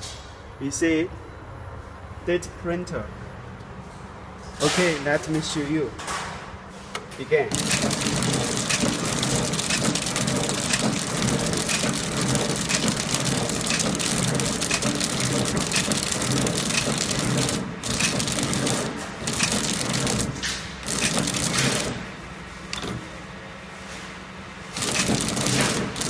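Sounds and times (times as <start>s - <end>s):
packing machine crackling: 7.5s - 22.1s, 24.7s - 26.0s.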